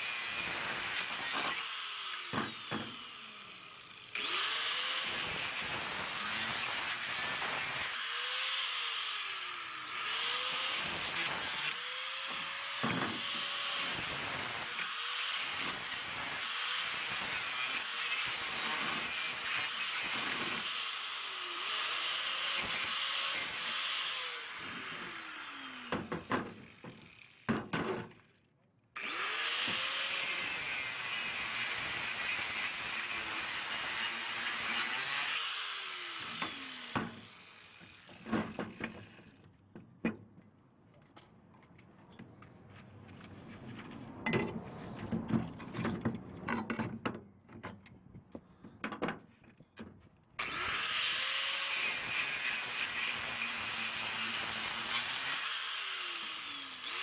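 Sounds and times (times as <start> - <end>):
power tool cutting metal: 0.0 - 27.6, 29.0 - 39.5, 50.4 - 57.0.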